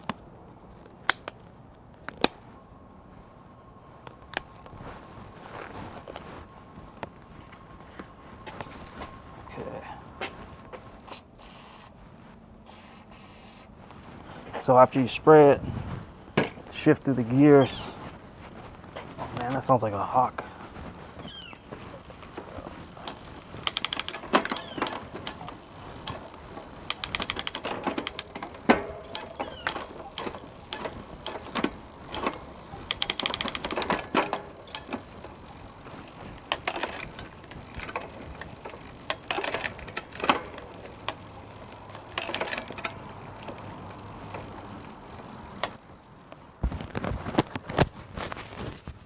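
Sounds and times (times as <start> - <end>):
bicycle shifter ratchet clicking: 22.5 - 45.8.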